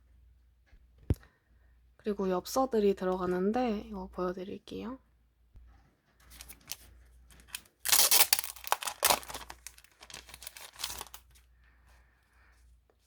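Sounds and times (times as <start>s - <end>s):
postcards rustling and crinkling: 6.2s - 11.5s
sharp crackles: 7.5s - 11.2s.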